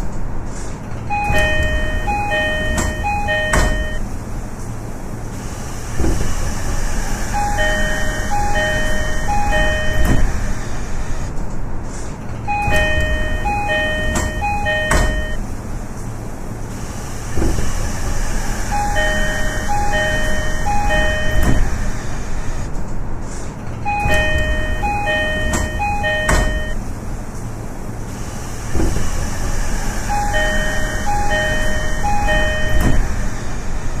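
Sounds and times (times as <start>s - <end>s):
train hum: 0.0s - 34.0s
door mechanism clunks: 1.0s - 4.1s, 7.2s - 10.9s, 12.3s - 15.5s, 17.3s - 22.8s, 23.7s - 26.8s, 30.0s - 33.4s
two-note door chime: 1.1s - 4.0s, 7.4s - 10.3s, 12.5s - 15.4s, 18.7s - 21.7s, 23.9s - 26.8s, 30.1s - 33.1s.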